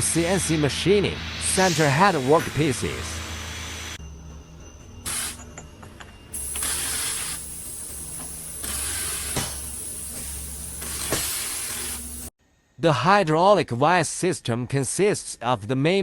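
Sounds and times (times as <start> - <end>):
compressed air hissing: 5.1 - 5.5, 6.4 - 12.3.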